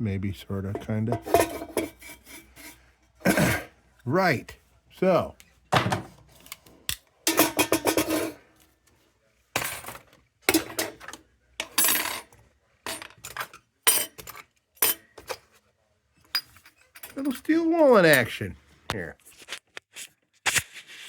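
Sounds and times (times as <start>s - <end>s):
metal lantern parts clanking: 0.7s - 3.7s, 6.4s - 8.4s, 9.6s - 15.5s, 16.2s - 18.4s.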